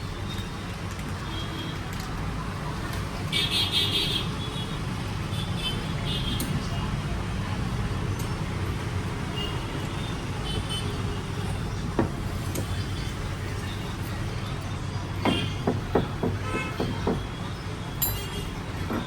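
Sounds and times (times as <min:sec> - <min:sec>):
low traffic rumble: 0:00.0 - 0:19.0
sharp metallic taps: 0:11.8 - 0:12.8, 0:15.2 - 0:17.4.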